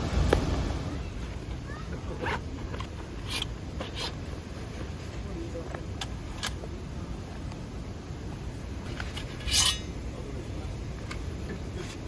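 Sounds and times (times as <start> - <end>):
low outdoor rumble: 0.0 - 12.0.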